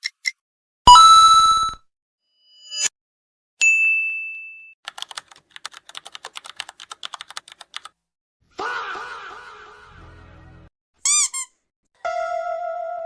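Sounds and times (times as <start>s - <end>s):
bell ding: 3.6s - 4.8s
rapid keyboard typing: 4.9s - 8.0s
person shouting: 8.5s - 9.9s.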